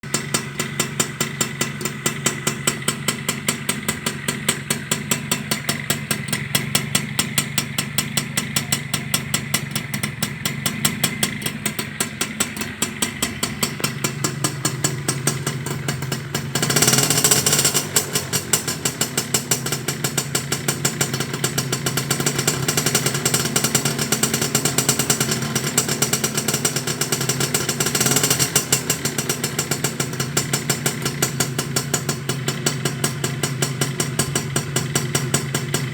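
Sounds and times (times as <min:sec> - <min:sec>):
motorcycle engine idling: 0:00.0 - 0:35.9.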